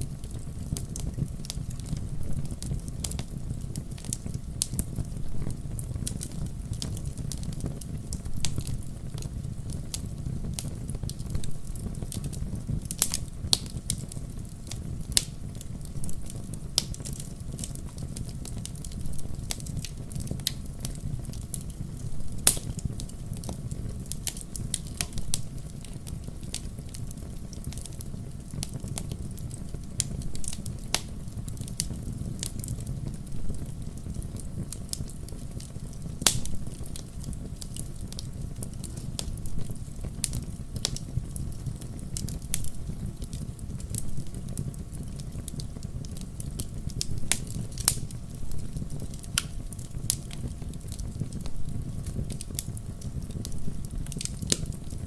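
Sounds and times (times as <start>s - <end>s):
campfire crackling: 0.0s - 55.0s
low rumble of flames: 0.0s - 55.0s
wood snaps and pops: 36.2s - 36.5s.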